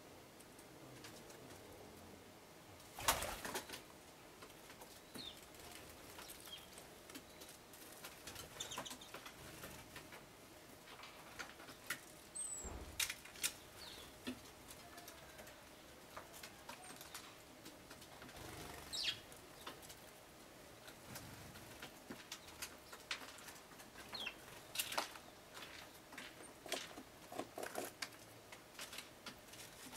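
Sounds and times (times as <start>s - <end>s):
birds fluttering wings: 2.9s - 3.8s, 18.0s - 19.1s.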